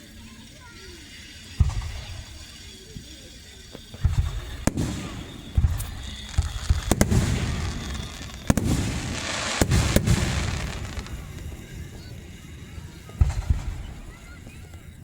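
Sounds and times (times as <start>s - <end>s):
fireworks crackling: 0.0s - 15.0s
fireworks sharp bangs: 1.4s - 2.9s, 3.7s - 15.0s
fireworks deep booms: 1.6s - 2.4s, 4.0s - 15.0s.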